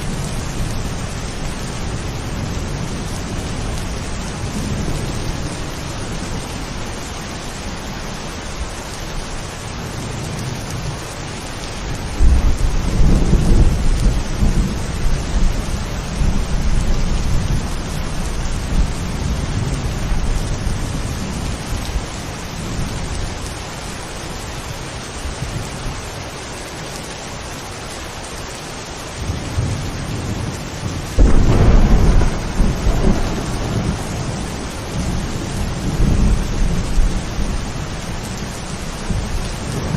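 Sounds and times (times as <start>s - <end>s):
heavy rain: 0.0s - 39.9s
thunder rolling: 12.1s - 21.4s, 31.1s - 39.9s.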